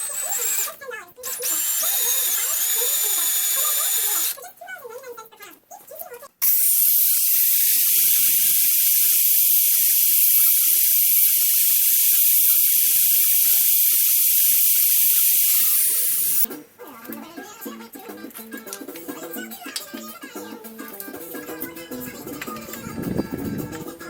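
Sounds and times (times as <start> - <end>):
loud steady hiss: 6.4 - 16.5.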